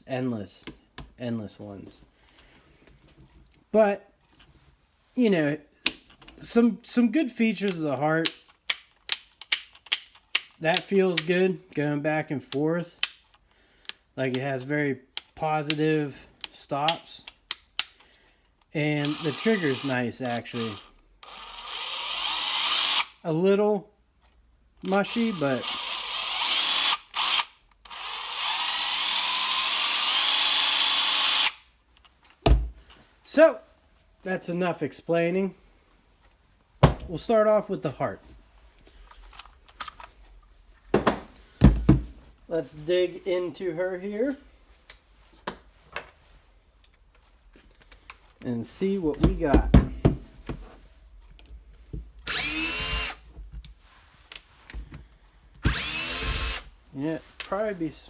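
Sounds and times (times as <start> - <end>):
impact driver motor spinning: 19.0 - 23.2, 24.8 - 31.6, 52.2 - 53.2, 55.6 - 56.8.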